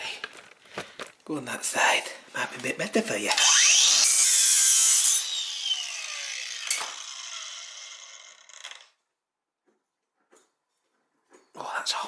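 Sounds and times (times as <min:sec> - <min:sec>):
power tool winding down: 0:03.3 - 0:09.0.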